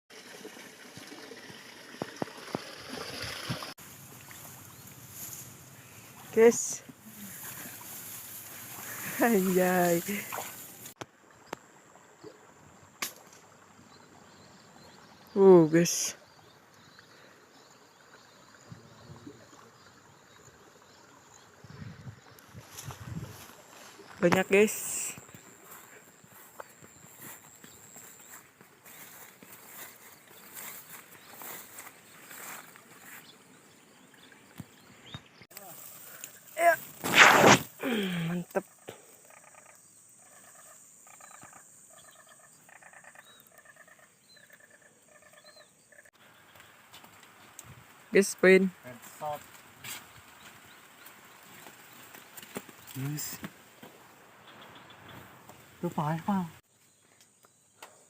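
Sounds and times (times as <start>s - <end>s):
insect hum: 2.0s - 58.0s
small birds chirping: 13.8s - 58.0s.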